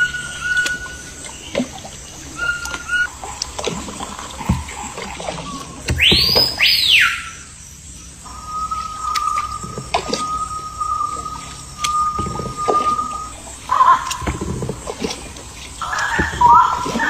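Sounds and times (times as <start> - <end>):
whistled calls sweeping up and down: 0.0 - 3.3, 5.3 - 14.2, 15.8 - 17.0
rainforest ambience: 0.0 - 17.0.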